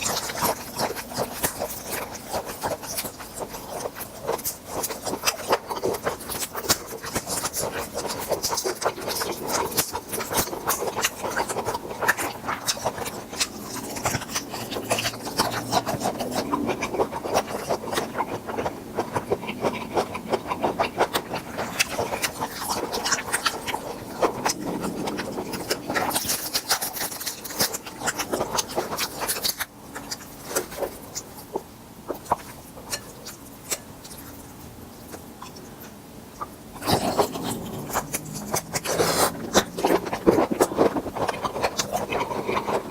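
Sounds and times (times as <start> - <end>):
crunchy chewing of shells: 0.0 - 42.9
rubbing and scraping: 36.8 - 42.9.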